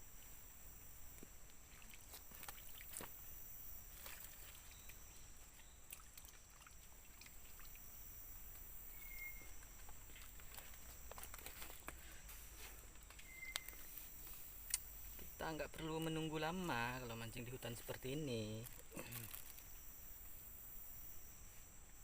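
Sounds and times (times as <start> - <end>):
insects droning: 0.0 - 22.0
small clicks and rustles: 9.6 - 14.9, 18.6 - 19.7.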